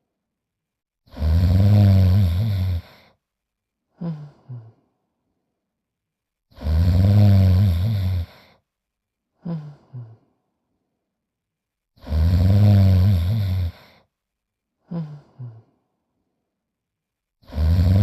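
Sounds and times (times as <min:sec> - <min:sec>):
cartoon dog snoring: 0:01.0 - 0:03.2, 0:06.5 - 0:08.6, 0:12.0 - 0:14.0, 0:17.4 - 0:18.0.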